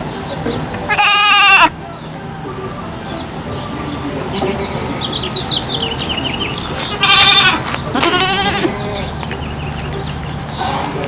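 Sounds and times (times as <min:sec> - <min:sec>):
goat bleating: 0:00.9 - 0:01.8, 0:06.5 - 0:09.0.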